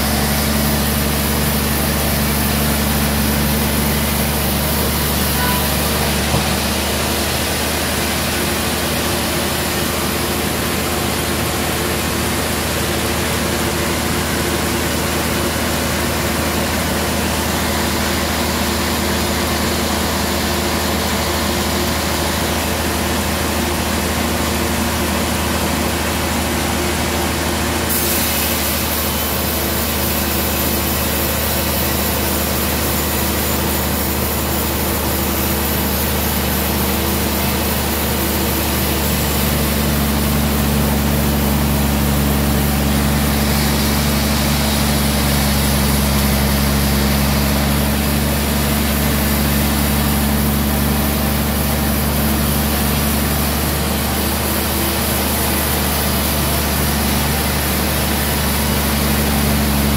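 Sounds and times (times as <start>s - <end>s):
higher hum: 5.1s - 7.1s
saw hissing: 27.9s - 59.9s.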